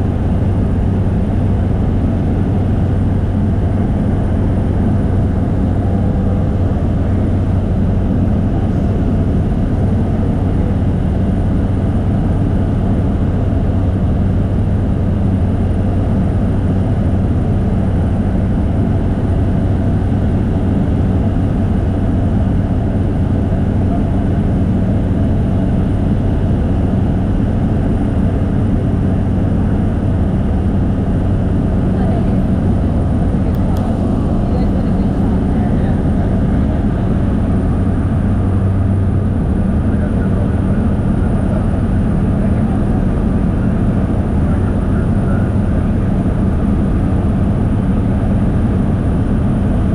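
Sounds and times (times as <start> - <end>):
propeller airplane engine drone: 0.0 - 49.9.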